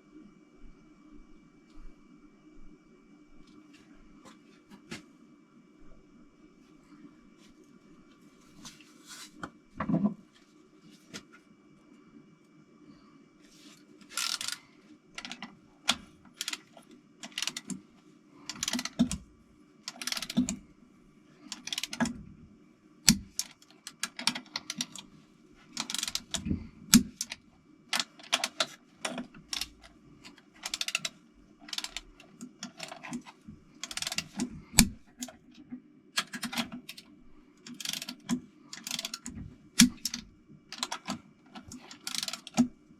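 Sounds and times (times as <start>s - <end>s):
steady low hum: 0.0s - 42.9s
metallic clicking and rattling: 14.1s - 14.6s, 15.2s - 17.8s, 18.5s - 19.2s, 25.8s - 35.4s, 37.7s - 42.7s.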